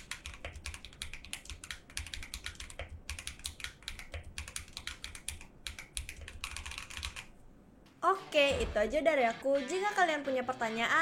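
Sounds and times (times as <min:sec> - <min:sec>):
mechanical keyboard typing: 0:00.0 - 0:07.3.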